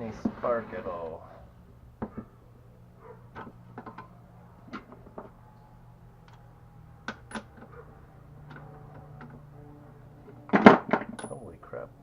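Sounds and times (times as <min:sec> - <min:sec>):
hand tools clicking and knocking: 0:10.5 - 0:11.5.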